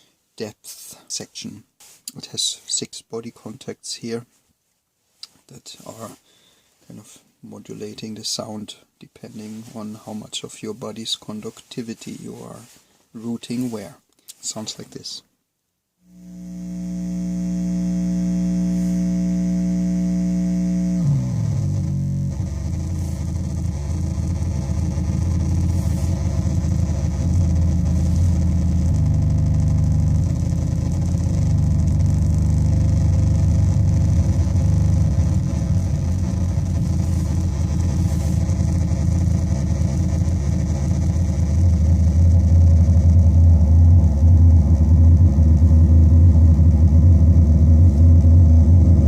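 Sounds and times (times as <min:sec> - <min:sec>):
buzzing synth drone: 0:16.0 - 0:49.0.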